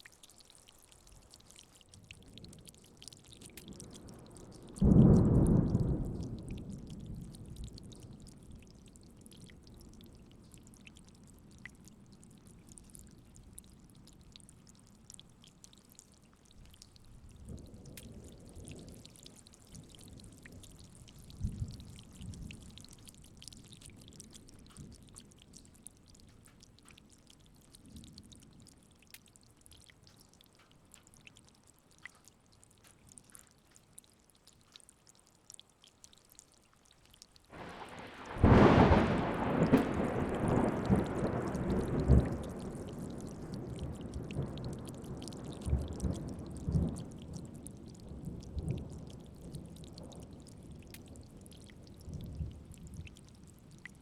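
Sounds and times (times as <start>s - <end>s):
drips: 0.0s - 54.0s
light rain: 0.0s - 54.0s
distant thunder rumbling: 37.6s - 47.2s.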